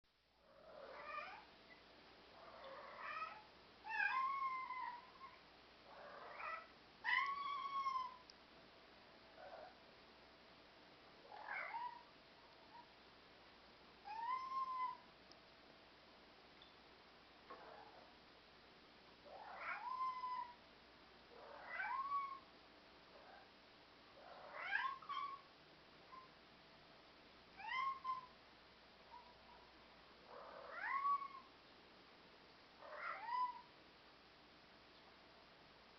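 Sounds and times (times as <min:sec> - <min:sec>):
cat meowing: 0:00.8 - 0:01.5, 0:02.7 - 0:05.4, 0:06.2 - 0:08.2, 0:11.4 - 0:12.1, 0:14.1 - 0:15.0, 0:19.4 - 0:20.6, 0:21.6 - 0:22.4, 0:24.5 - 0:25.4, 0:27.6 - 0:28.3, 0:30.4 - 0:31.5, 0:32.8 - 0:33.7.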